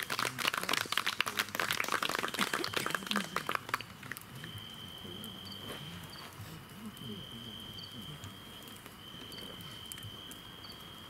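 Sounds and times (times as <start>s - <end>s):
small group clapping: 0.0s - 4.5s
voices: 0.0s - 10.5s.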